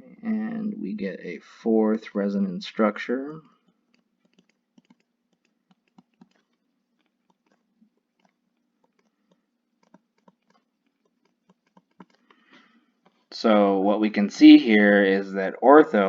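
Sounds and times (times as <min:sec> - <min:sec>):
faint small clicks and taps: 0:03.4 - 0:13.3.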